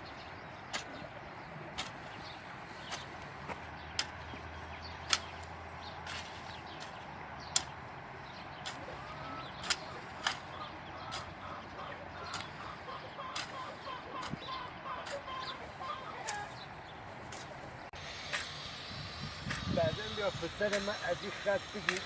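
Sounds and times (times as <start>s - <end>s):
hen clucking: 8.6s - 17.5s.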